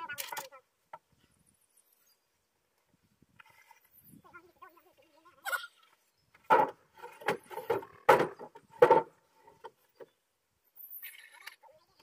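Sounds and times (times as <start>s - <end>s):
wooden knocks and clatters: 6.3s - 10.1s.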